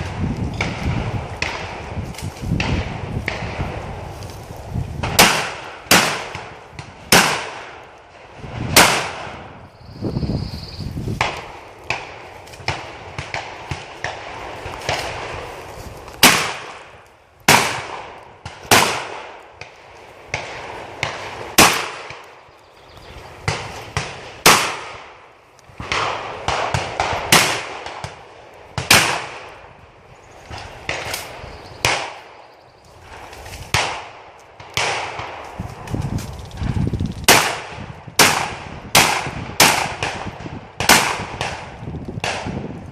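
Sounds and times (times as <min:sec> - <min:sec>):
shotgun shots: 0:05.0 - 0:07.8, 0:08.7 - 0:09.5, 0:16.2 - 0:16.9, 0:17.5 - 0:19.4, 0:20.3 - 0:22.2, 0:23.4 - 0:25.2, 0:25.8 - 0:28.2, 0:28.8 - 0:29.5, 0:30.5 - 0:32.3, 0:33.7 - 0:35.4, 0:37.2 - 0:42.6.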